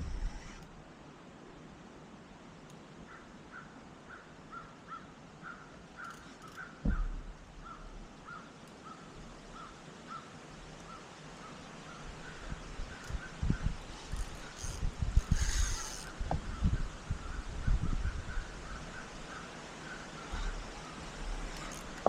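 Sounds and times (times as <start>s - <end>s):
bird calling: 3.1s - 17.4s, 18.3s - 22.0s
low thump: 6.8s - 7.4s.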